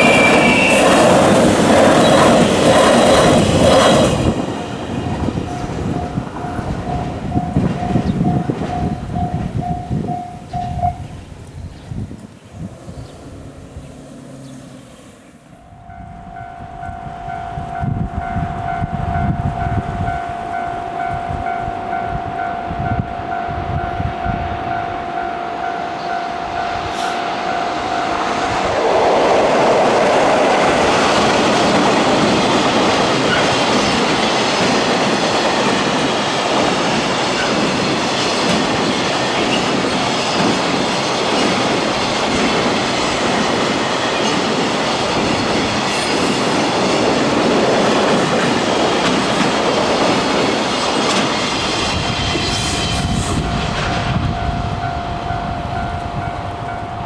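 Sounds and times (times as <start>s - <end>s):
train wheels rushing on rails: 0.0s - 57.0s
level crossing bell ringing: 15.7s - 28.4s.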